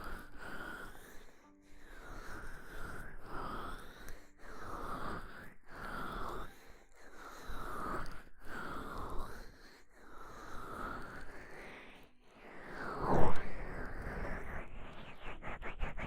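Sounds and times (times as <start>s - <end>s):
oiled hands rubbing microphone: 13.5s - 16.0s.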